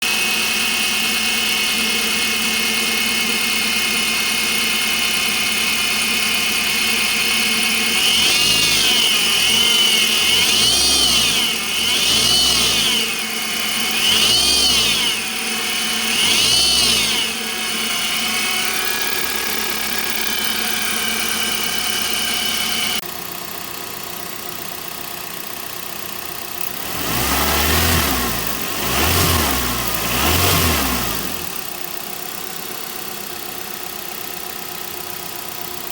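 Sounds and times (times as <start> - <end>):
car engine idling and revving: 0.0 - 35.9
high pulley whine: 7.8 - 23.0.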